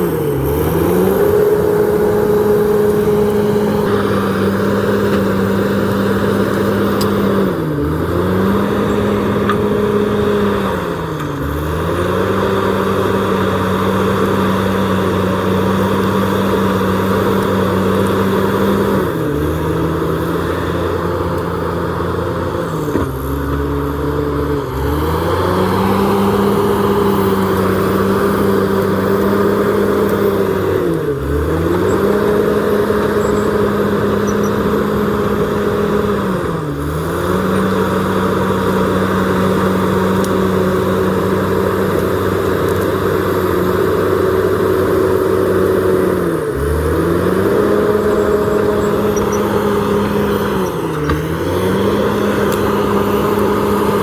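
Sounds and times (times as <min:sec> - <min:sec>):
bulldozer diesel engine revving: 0:00.0 - 0:54.0.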